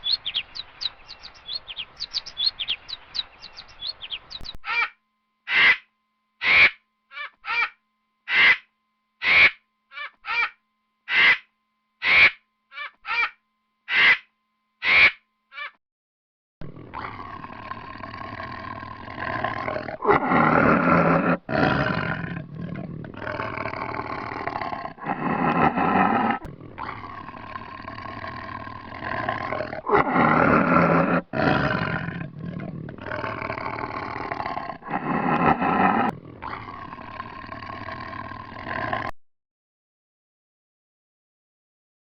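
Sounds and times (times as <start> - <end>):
animal roaring: 16.6 - 39.2.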